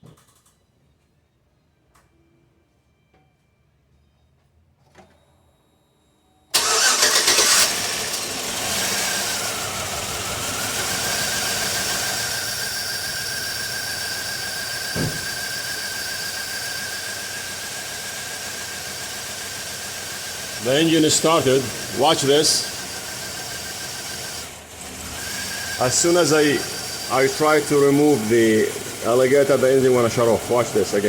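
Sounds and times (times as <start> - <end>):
car engine starting and idling: 6.5 - 31.0.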